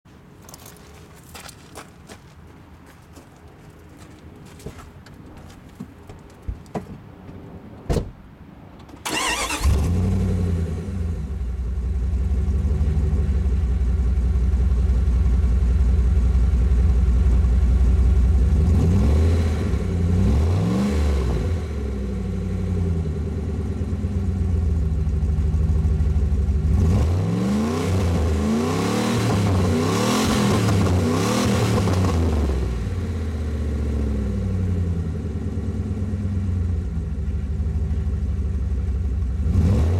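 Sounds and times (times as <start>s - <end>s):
engine starting: 8.9s - 10.1s
engine idling and revving: 9.1s - 39.9s.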